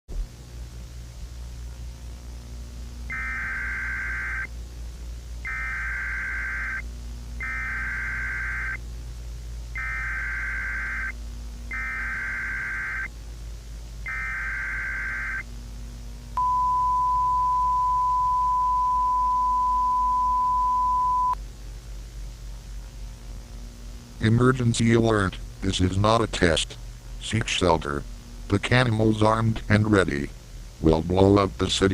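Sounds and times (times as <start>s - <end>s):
steady attention tone: 2.9s - 4.6s, 5.4s - 8.9s, 9.7s - 13.1s, 14.0s - 21.4s
harsh digital data bursts: 3.1s - 4.5s, 5.4s - 6.8s, 7.4s - 8.8s, 9.7s - 13.1s, 14.0s - 15.5s.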